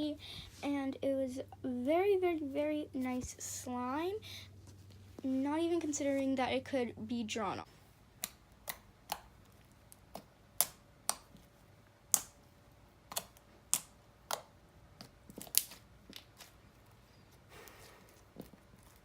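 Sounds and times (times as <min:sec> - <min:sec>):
slime clicking and popping: 0:08.2 - 0:11.4, 0:12.1 - 0:12.4, 0:13.1 - 0:16.5.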